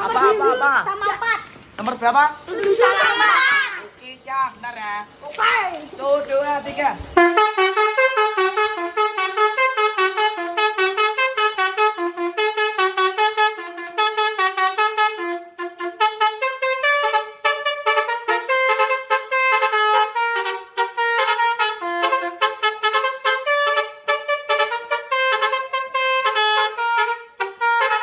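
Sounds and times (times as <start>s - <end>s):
musical bus horn tune: 7.2s - 28.0s.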